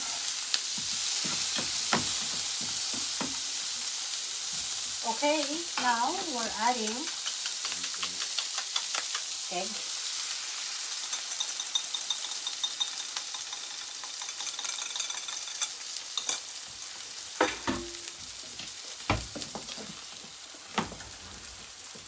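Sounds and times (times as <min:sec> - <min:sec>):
food sizzling in a frying pan: 0:00.0 - 0:22.0
utensil knocking against pan: 0:01.2 - 0:03.4, 0:05.8 - 0:09.4, 0:17.4 - 0:18.1.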